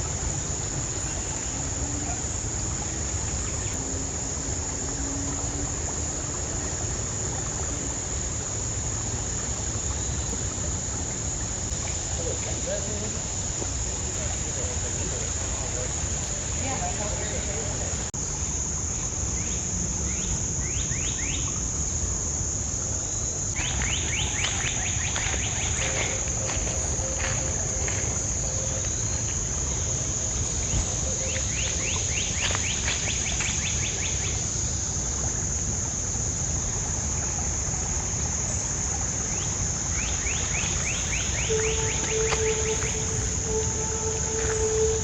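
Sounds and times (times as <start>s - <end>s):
insects trilling: 0.0s - 45.0s
rapid ticking trills: 39.2s - 45.0s.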